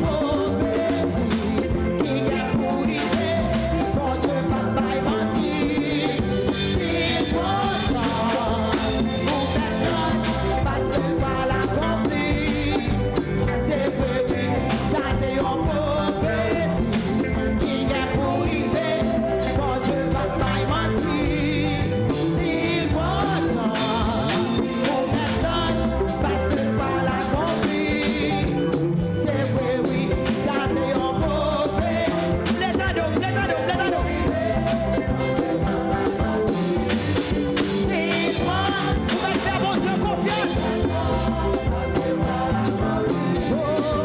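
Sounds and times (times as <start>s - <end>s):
person singing: 0.0s - 44.0s
worship band playing: 0.0s - 44.0s.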